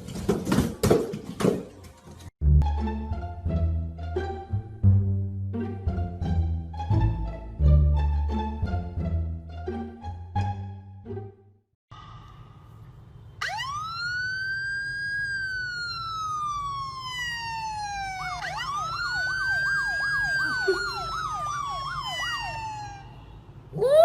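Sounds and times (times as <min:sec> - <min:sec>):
siren wailing: 0:13.4 - 0:24.0
siren yelping: 0:13.4 - 0:24.0.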